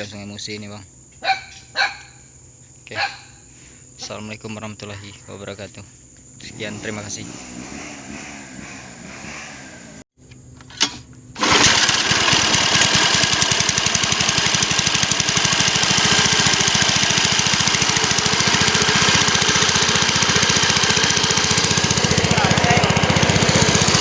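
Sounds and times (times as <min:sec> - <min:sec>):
small engine chugging: 0:06.4 - 0:10.0, 0:11.4 - 0:24.0.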